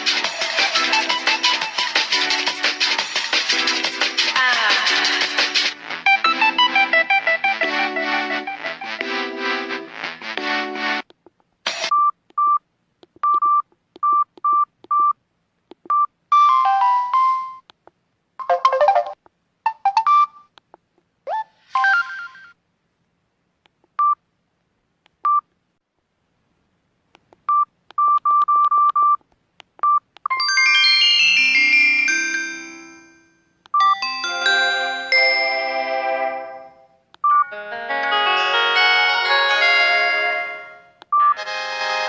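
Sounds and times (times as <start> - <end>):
ringtone melody: 0.0 - 11.0, 16.3 - 17.6, 18.4 - 20.5, 21.3 - 22.5, 30.3 - 42.0
phone keypad beeps: 13.2 - 15.2, 15.9 - 17.6, 27.5 - 29.2, 33.7 - 34.0, 37.2 - 37.5, 41.1 - 41.4.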